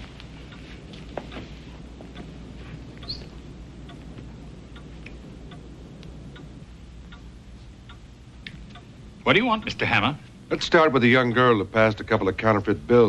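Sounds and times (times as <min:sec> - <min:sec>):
light ticks and clicks: 0:00.0 - 0:08.9
low steady hum: 0:00.0 - 0:13.0.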